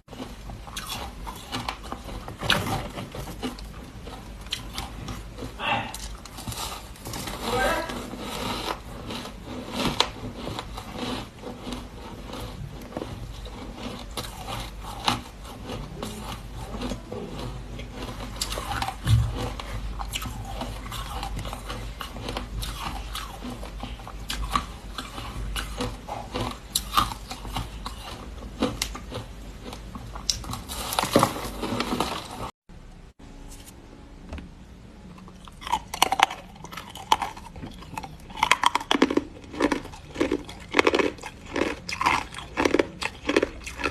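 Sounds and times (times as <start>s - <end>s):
person crunching frozen ice: 0.1s - 32.5s, 35.6s - 43.9s.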